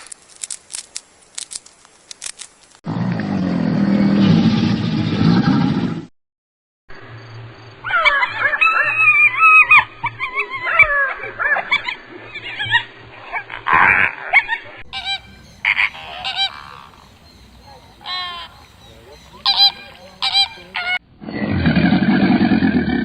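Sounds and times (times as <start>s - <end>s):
large animal roaring: 2.9s - 6.1s, 21.2s - 23.0s
geese honking: 13.6s - 21.0s.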